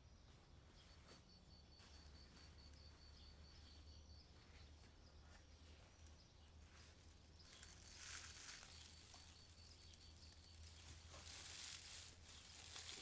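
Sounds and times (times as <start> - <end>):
soft rustle: 4.4 - 13.0.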